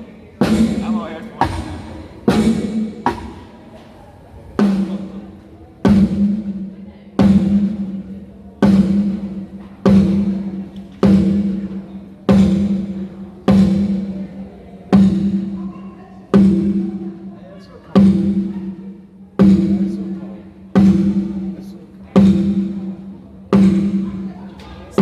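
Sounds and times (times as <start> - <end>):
tom drum hits ringing: 0.4 - 3.6, 5.9 - 6.6, 7.2 - 14.2, 14.9 - 15.7, 16.3 - 17.0, 18.0 - 18.8, 19.4 - 20.2, 20.8 - 21.6, 22.2 - 24.3.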